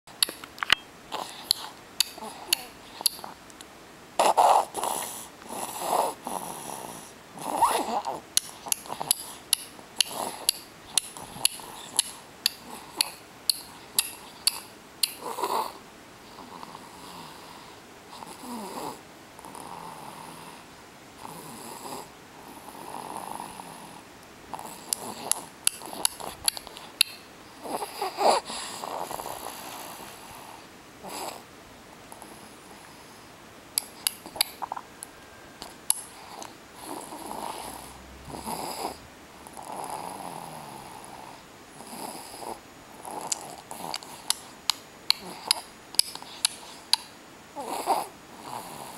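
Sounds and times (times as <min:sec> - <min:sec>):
infant snoring: 0:01.1 - 0:03.4, 0:04.2 - 0:09.4, 0:10.0 - 0:13.2, 0:14.3 - 0:20.6, 0:21.2 - 0:26.8, 0:27.6 - 0:31.5, 0:33.8 - 0:35.0, 0:35.6 - 0:44.5, 0:45.1 - 0:46.8, 0:47.6 - 0:48.9
sucking on a pacifier clicks: 0:43.3 - 0:47.1.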